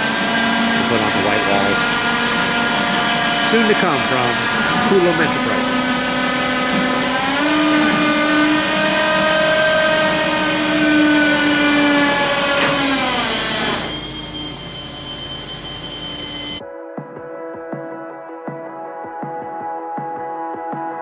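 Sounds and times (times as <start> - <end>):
motor running: 0.0 - 16.6.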